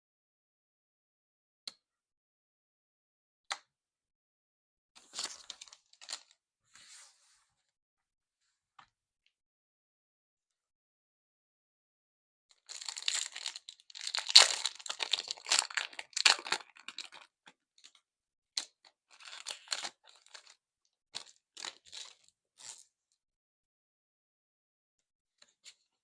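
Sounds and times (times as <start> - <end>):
foil wrapper tearing and crinkling: 12.7 - 17.2.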